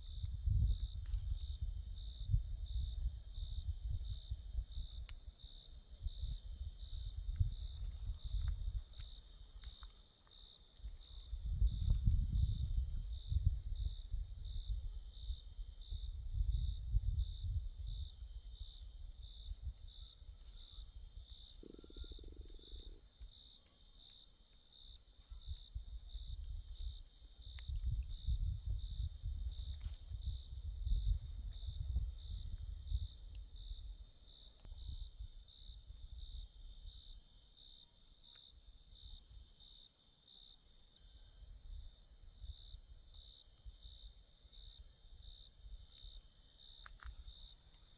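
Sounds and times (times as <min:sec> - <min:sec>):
insect chorus trilling: 0:00.0 - 0:47.9
insect pulsing call: 0:17.5 - 0:47.9.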